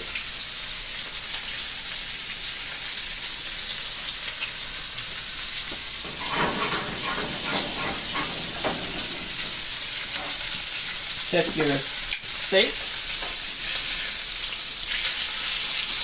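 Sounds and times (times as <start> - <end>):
oil crackling: 5.5 - 11.8
shrimp and garlic sizzling in oil: 9.2 - 16.0.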